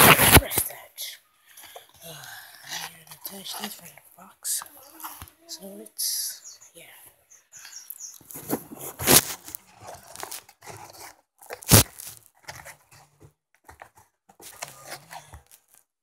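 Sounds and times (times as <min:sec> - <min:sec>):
packaging rustling: 0:08.2 - 0:16.0
packaging tearing: 0:08.3 - 0:12.8.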